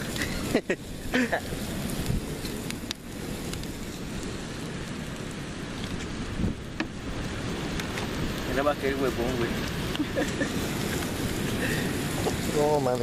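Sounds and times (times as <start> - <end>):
bonfire rushing and crackling: 0.0 - 13.0
rain: 0.0 - 13.0
wind: 0.0 - 13.0.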